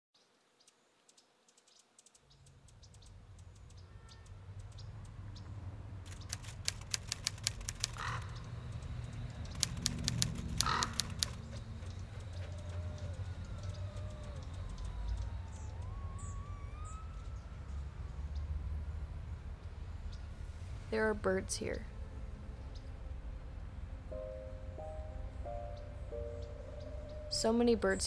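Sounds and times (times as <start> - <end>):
rapid sharp clicking: 6.1 - 15.3
low drone: 6.1 - 28.0
harsh crow-like caw: 7.9 - 8.5, 10.6 - 11.4.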